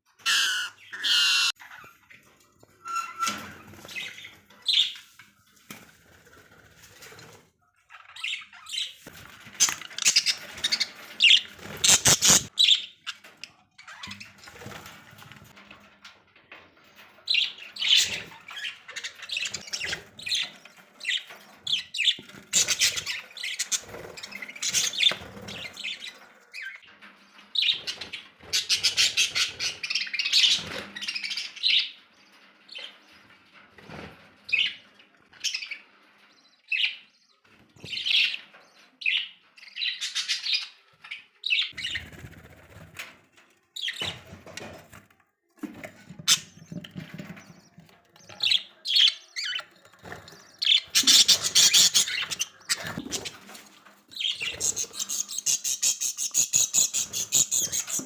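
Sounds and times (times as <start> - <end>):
budgerigars chirping: 0.3 - 1.5, 50.6 - 53.3.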